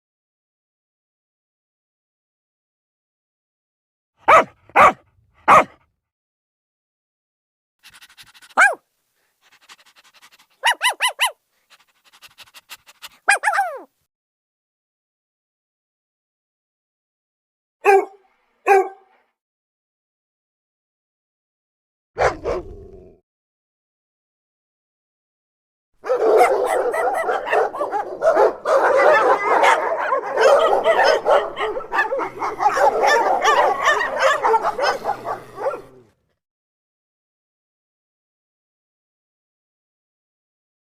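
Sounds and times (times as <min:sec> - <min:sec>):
dog yelping: 0:04.2 - 0:05.8, 0:07.8 - 0:08.8, 0:09.5 - 0:11.8, 0:13.0 - 0:13.9, 0:17.8 - 0:19.0, 0:22.2 - 0:22.8, 0:26.0 - 0:36.1
dog panting: 0:07.8 - 0:13.3, 0:26.4 - 0:35.8.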